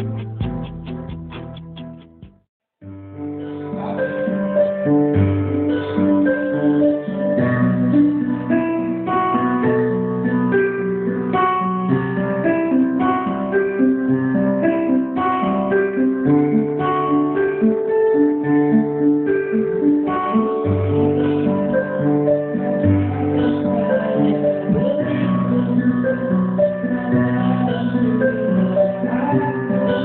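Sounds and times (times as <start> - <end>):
low bass notes: 0.0 - 2.4
strummed and plucked guitar: 0.0 - 2.4.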